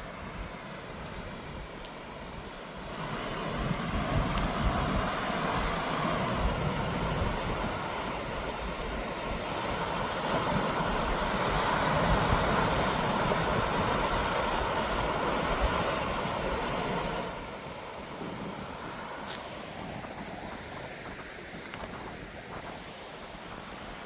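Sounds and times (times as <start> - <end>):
water rushing: 0.0 - 24.0.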